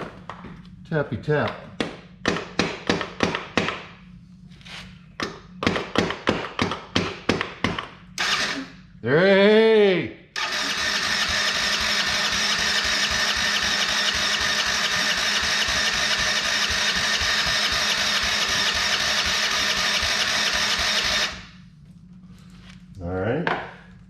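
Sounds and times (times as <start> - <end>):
engine running with fast beat: 10.4 - 21.5.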